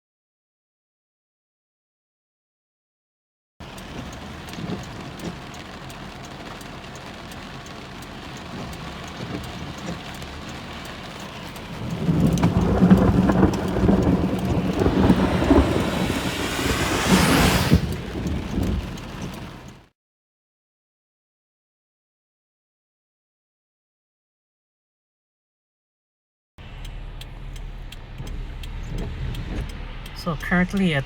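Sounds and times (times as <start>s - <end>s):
heavy rain falling: 3.6s - 19.9s, 26.6s - 31.0s
rolling thunder: 11.8s - 19.7s.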